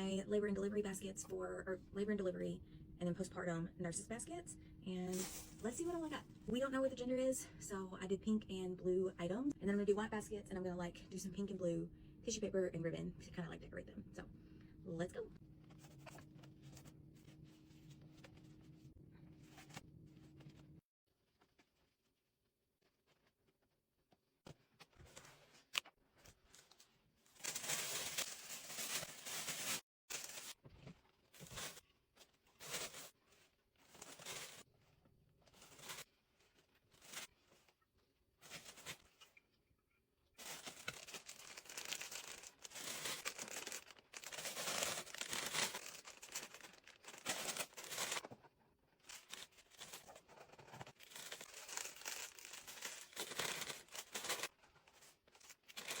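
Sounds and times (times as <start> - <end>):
tissue paper rustling: 5.1 - 5.7, 25.1 - 30.6, 40.4 - 48.3, 49.0 - 56.0.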